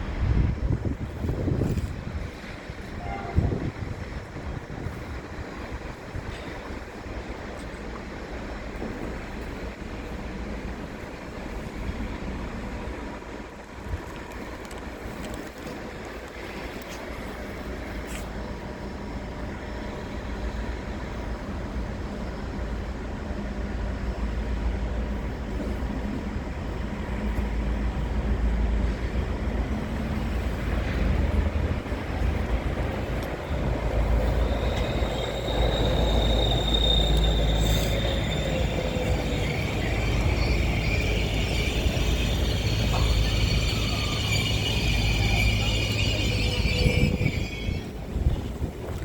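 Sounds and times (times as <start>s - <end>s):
wind noise on microphone: 0.0s - 6.8s, 29.2s - 49.0s
diesel locomotive rumbling: 0.0s - 49.0s
high-pitched wheel squeal: 33.4s - 48.5s.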